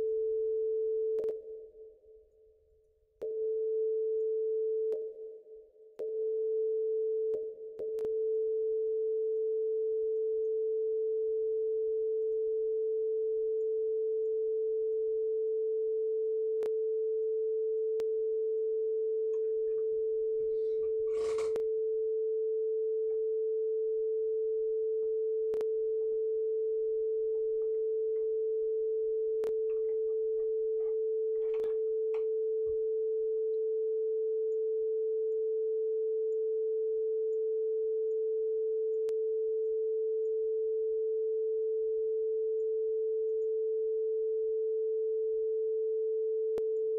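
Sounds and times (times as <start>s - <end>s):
synthesizer steady pure tone: 0.0s - 2.3s, 3.2s - 46.9s
brief rustle: 21.0s - 21.6s.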